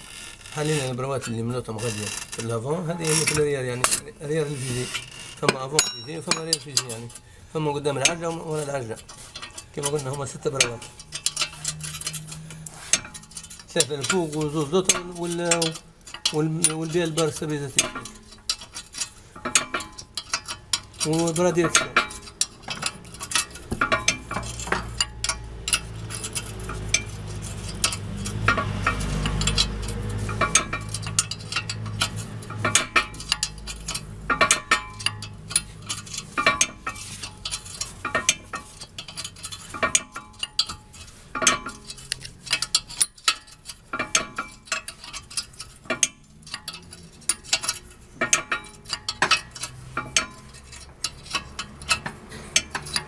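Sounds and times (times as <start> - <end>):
metal tools clinking: 0.0 - 53.0.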